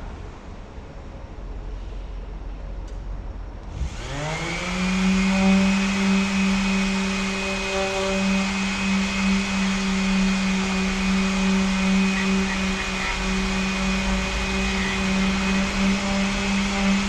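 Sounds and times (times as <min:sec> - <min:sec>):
electric sander motor running: 0:03.7 - 0:17.0.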